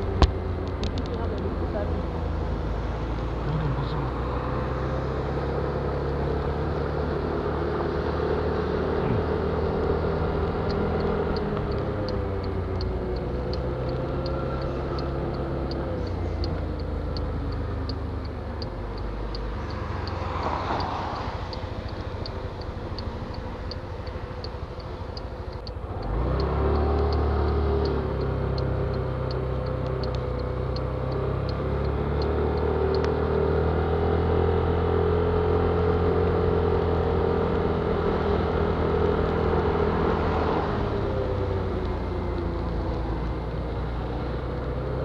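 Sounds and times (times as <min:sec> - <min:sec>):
car engine and road noise: 0:00.0 - 0:45.0
turn-signal ticking: 0:08.9 - 0:33.7.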